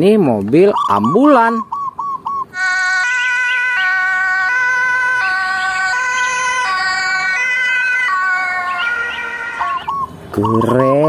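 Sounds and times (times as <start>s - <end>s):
two-tone ambulance siren: 2.6s - 11.0s.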